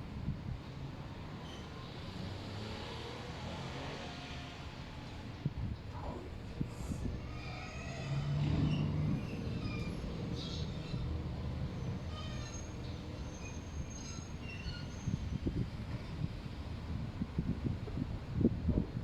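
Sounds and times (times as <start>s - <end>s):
train rumbling on rails: 0.0s - 19.0s
train wheels squealing: 1.4s - 2.2s, 6.8s - 16.3s.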